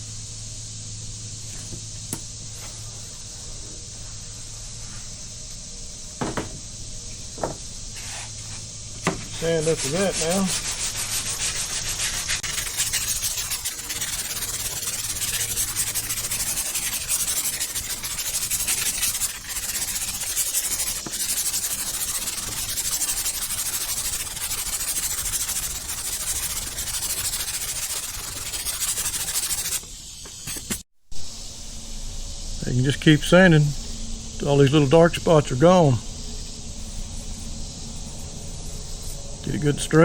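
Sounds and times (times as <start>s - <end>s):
sandpaper scratching back and forth: 8.0s - 30.8s.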